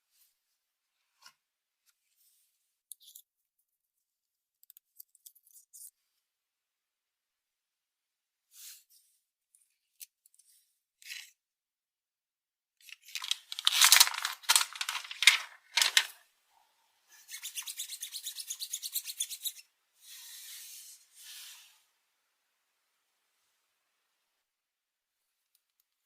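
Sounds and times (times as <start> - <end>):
packaging rubbing and tearing: 12.9 - 16.1.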